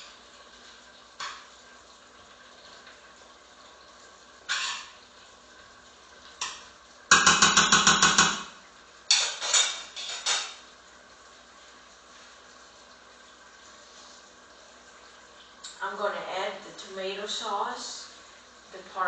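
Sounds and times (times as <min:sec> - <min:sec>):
utensil knocking against pan: 0:06.4 - 0:08.5.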